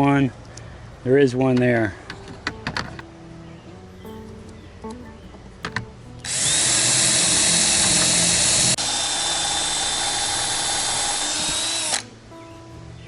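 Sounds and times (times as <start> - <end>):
power drill drilling: 6.3 - 12.0.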